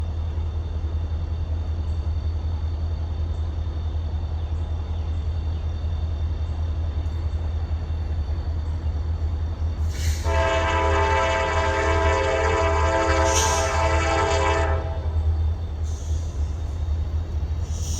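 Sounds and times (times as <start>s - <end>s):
diesel locomotives rumbling: 0.0s - 17.9s
train air horn chord: 10.1s - 15.4s.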